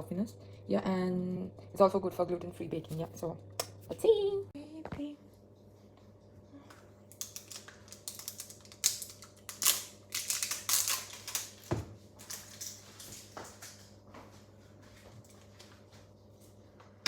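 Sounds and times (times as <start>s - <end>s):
crackling and clicking utensils: 7.1s - 13.9s.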